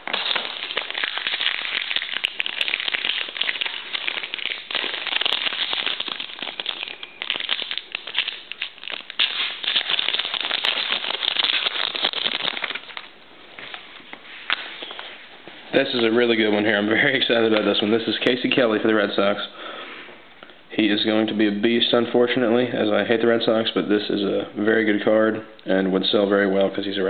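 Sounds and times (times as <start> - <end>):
plastic wrapper crinkling: 0.0 - 18.7.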